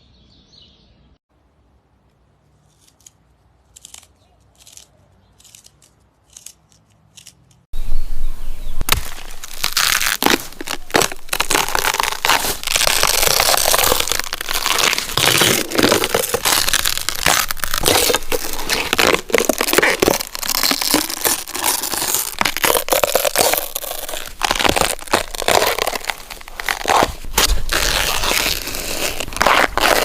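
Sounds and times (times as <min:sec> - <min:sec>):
crunching and crackling: 0:08.8 - 0:30.0.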